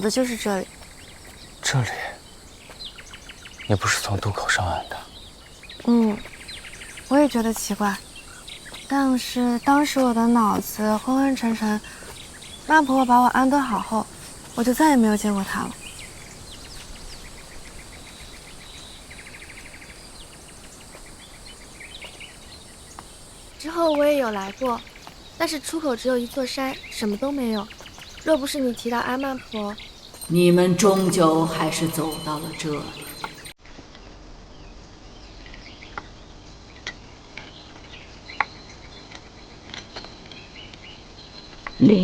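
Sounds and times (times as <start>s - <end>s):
bird trill: 0.0s - 33.6s
small birds chirping: 0.0s - 42.0s
steady background hiss: 0.0s - 42.0s.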